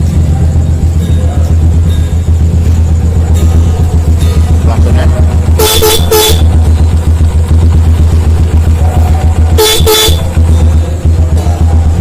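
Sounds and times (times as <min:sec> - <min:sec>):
motorcycle horn toots: 0:05.4 - 0:07.2, 0:09.3 - 0:10.8.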